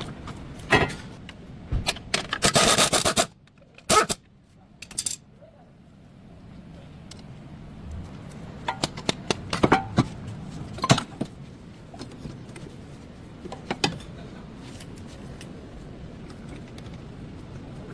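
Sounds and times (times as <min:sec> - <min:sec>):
metal tools clinking: 0:04.8 - 0:05.2.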